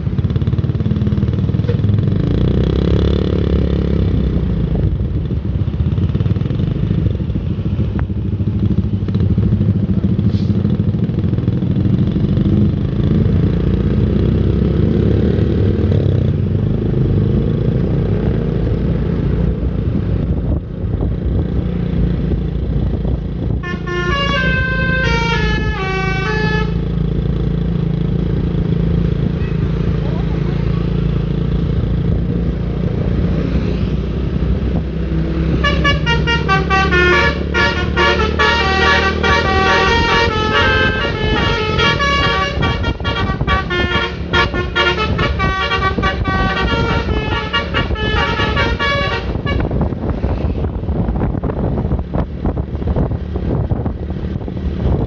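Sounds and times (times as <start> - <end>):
traffic rumble: 0.0 - 55.0
bus musical horn tune: 23.6 - 26.9, 35.5 - 49.8.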